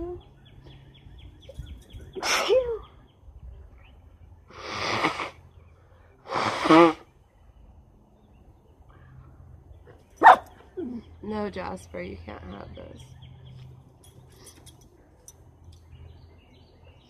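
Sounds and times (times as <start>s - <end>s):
woman sneezing: 2.2s - 2.8s.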